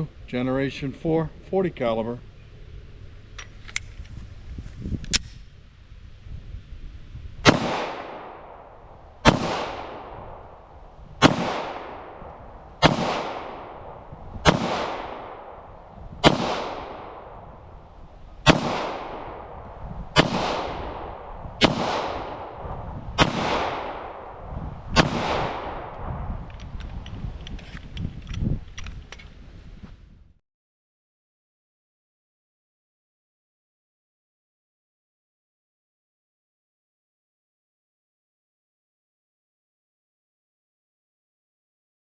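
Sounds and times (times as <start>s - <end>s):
pistol shots with echo: 7.4s - 10.4s, 11.2s - 17.5s, 18.4s - 24.4s, 25.0s - 26.1s.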